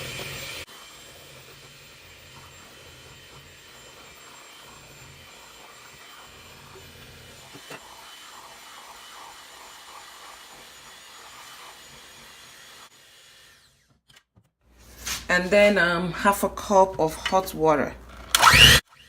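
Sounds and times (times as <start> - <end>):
small motor whirring: 0.0 - 14.2, 18.1 - 19.0.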